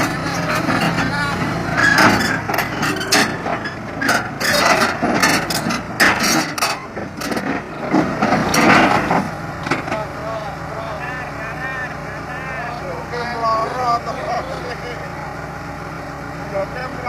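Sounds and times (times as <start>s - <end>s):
low engine drone: 0.0s - 17.0s
metallic clanking and clicking: 1.8s - 10.0s.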